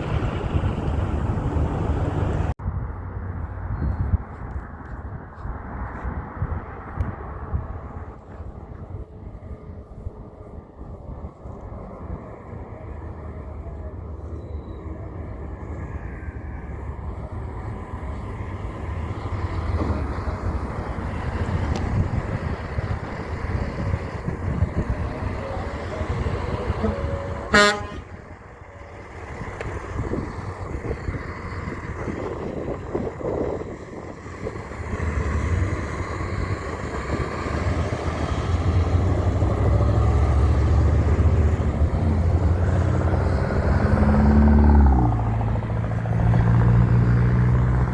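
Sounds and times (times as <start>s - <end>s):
truck engines rumbling: 0.0s - 47.9s
truck horn toot: 25.6s - 28.4s.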